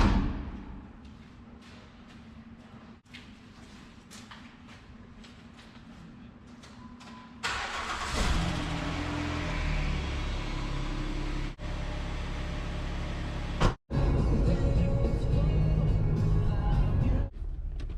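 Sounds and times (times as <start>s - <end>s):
car engine starting and idling: 7.4s - 17.9s.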